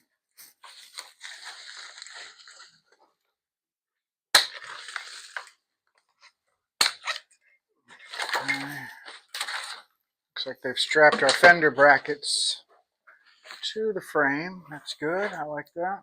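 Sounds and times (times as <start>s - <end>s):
packing material crinkling: 0.5s - 3.2s.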